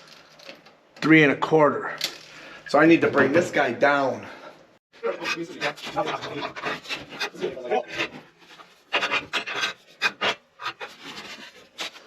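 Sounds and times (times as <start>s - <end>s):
press rasping and scraping metal: 5.2s - 12.0s.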